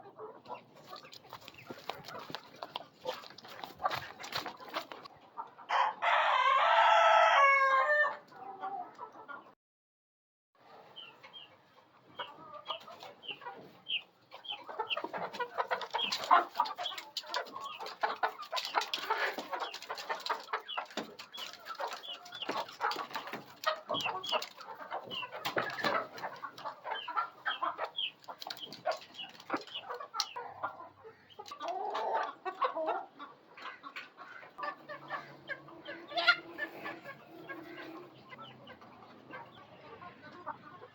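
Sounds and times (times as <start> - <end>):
chickens clucking: 0.0 - 9.6, 10.6 - 40.9
rooster crowing: 5.7 - 8.2.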